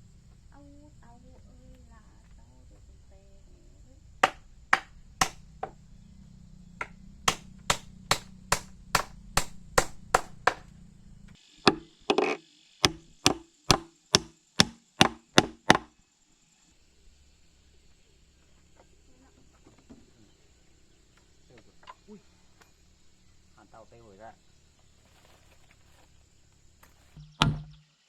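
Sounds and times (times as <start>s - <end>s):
blade chopping: 4.2s - 5.8s, 6.8s - 10.8s, 12.8s - 15.9s.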